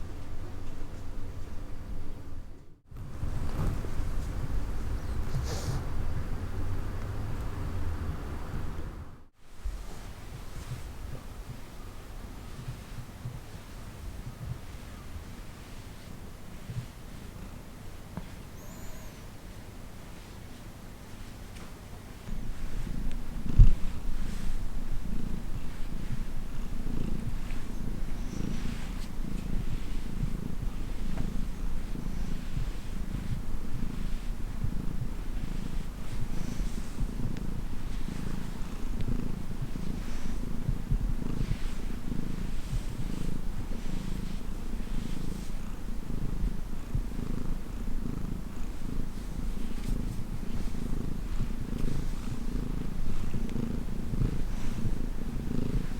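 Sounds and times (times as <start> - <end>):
cat purring: 0.0 - 55.9.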